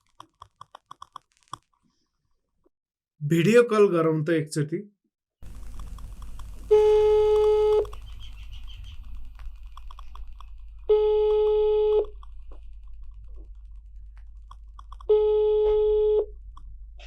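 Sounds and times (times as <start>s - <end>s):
low steady hum: 5.4s - 17.0s
video call ringing tone: 6.7s - 7.9s, 10.9s - 12.1s, 15.1s - 16.3s.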